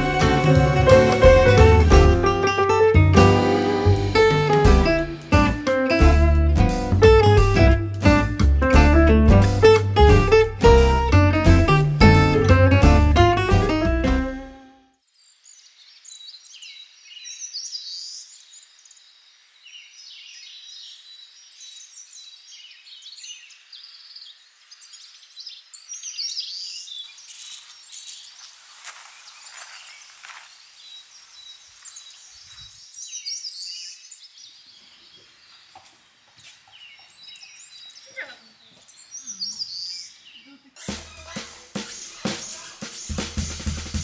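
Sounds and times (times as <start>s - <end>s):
soft high hiss: 0.0s - 14.7s
wild birds chirping: 29.2s - 40.8s.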